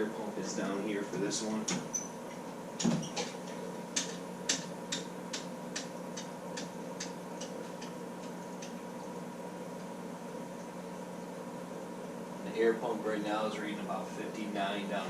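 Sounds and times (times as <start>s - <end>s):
aquarium air pump hum: 0.0s - 15.0s.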